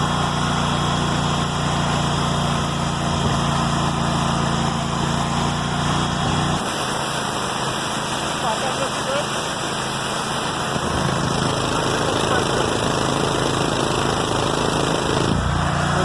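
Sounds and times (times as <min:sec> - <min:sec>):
high-pressure water spray hiss: 0:00.0 - 0:16.0
pressure washer engine hum: 0:00.0 - 0:16.0.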